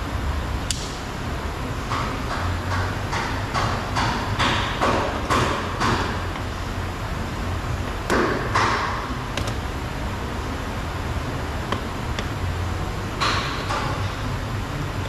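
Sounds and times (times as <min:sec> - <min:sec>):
plastic trim panel clicks and knocks: 0:08.1 - 0:09.6.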